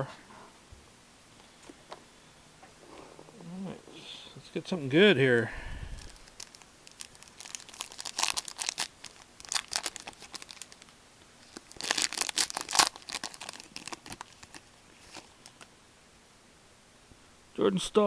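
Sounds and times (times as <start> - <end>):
wrapper crinkling and tearing: 6.0 - 15.7.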